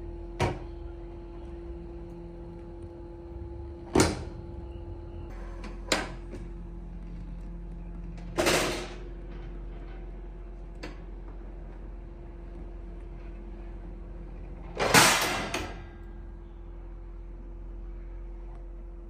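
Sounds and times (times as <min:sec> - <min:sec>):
printer motor hum: 0:00.0 - 0:14.6.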